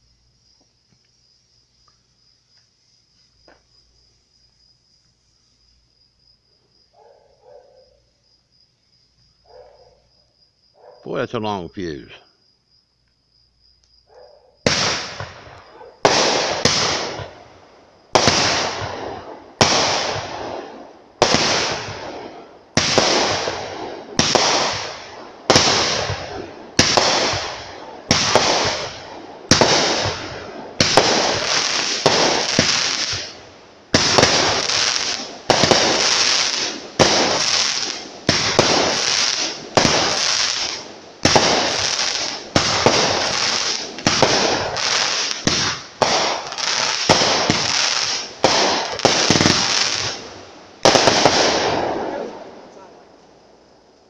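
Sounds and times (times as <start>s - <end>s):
firework hiss: 0.0s - 6.2s, 14.6s - 52.8s
firework bangs: 14.6s - 53.0s.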